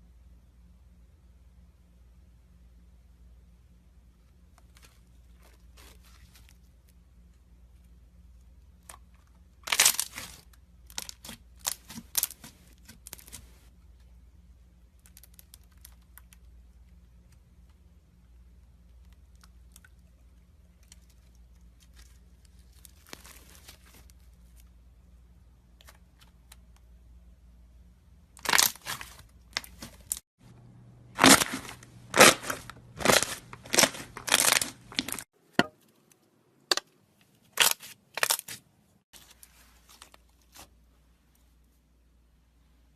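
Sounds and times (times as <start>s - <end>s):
slime crackling and popping: 9.6s - 13.4s, 28.4s - 30.2s, 31.2s - 35.2s.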